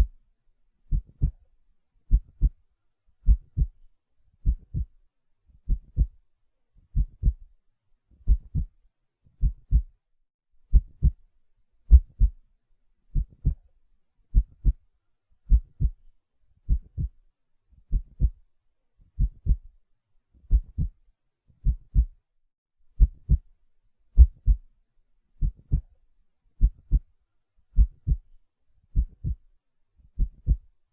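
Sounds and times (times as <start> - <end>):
slow heartbeat: 0.9 - 1.4, 2.1 - 2.6, 3.2 - 3.8, 4.4 - 5.0, 5.6 - 6.2, 6.9 - 7.5, 8.2 - 8.8, 9.4 - 10.0, 10.7 - 11.2, 11.9 - 12.4, 13.2 - 13.7, 14.3 - 14.8, 15.5 - 16.0, 16.7 - 17.2, 17.9 - 18.4, 19.2 - 19.7, 20.4 - 21.0, 21.6 - 22.2, 23.0 - 23.5, 24.2 - 24.7, 25.4 - 26.0, 26.6 - 27.1, 27.8 - 28.3, 28.9 - 29.4, 30.2 - 30.7.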